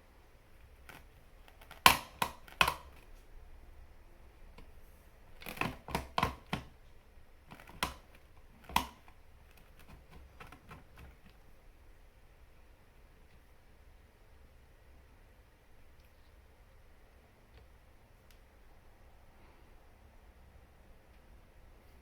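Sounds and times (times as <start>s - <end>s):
hard objects clicking and knocking: 0.9s - 3.0s, 5.4s - 6.8s, 7.5s - 11.3s.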